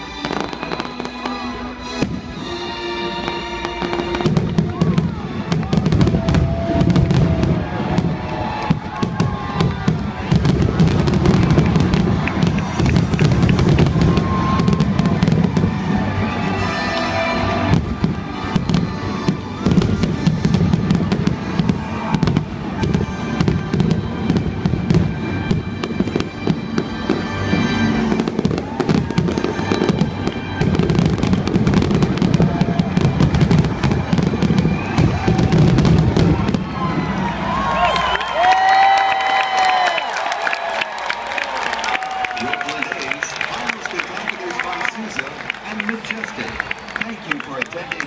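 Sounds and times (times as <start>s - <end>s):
music playing: 0.0s - 38.4s
fireworks bangs and crackles: 0.0s - 40.0s.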